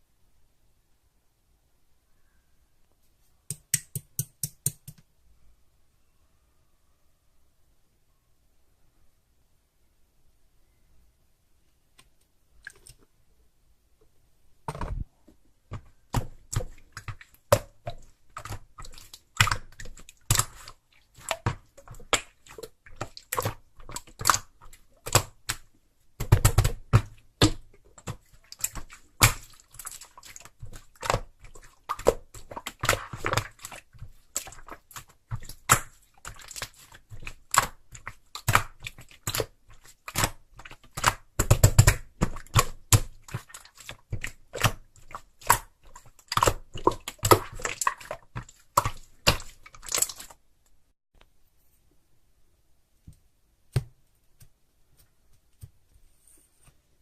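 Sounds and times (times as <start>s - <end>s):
sharp clicks and taps: 3.5s - 5.1s.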